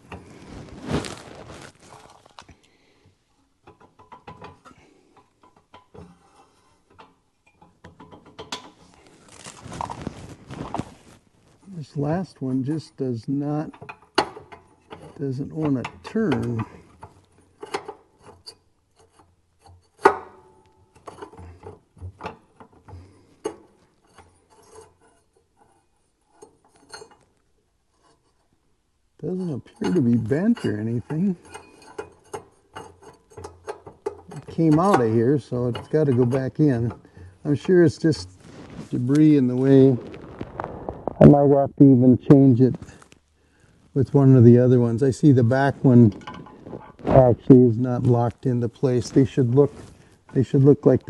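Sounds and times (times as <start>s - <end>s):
metal clicks knocks and scraping: 3.6s - 9.5s, 13.7s - 28.5s, 29.4s - 39.9s, 45.3s - 47.3s.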